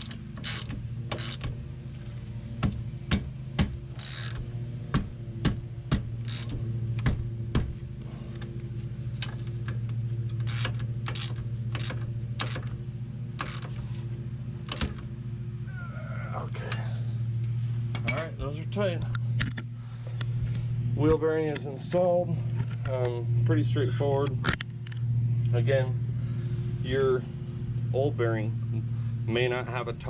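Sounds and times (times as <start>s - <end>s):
socket wrench ratcheting: 0.0s - 1.5s, 4.0s - 4.4s, 6.2s - 6.6s, 10.3s - 12.7s, 13.4s - 13.8s
low hum: 0.0s - 30.0s.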